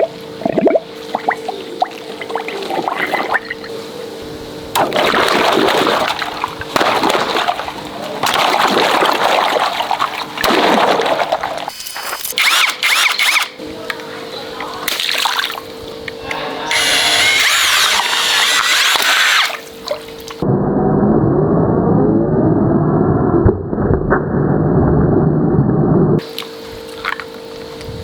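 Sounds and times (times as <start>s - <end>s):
steady hum: 0.0s - 28.0s
water splashing and gushing: 4.8s - 11.7s.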